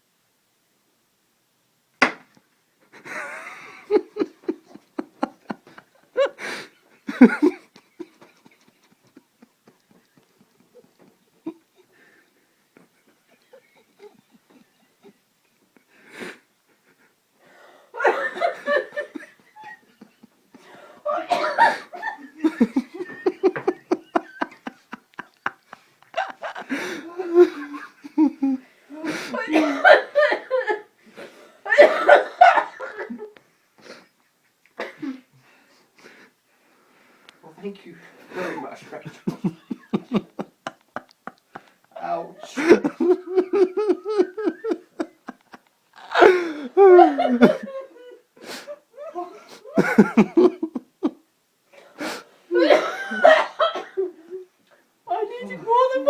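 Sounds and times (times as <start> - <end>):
person laughing helplessly: 2.9 - 12.2, 12.8 - 15.2, 18.0 - 30.9, 31.6 - 34.0, 42.4 - 51.2.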